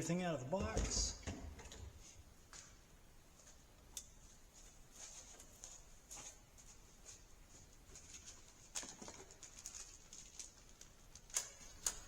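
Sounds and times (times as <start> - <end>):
packaging rustling: 7.9 - 12.0.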